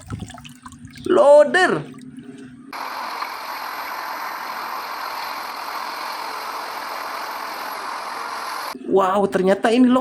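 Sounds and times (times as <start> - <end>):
water running: 0.0 - 6.3.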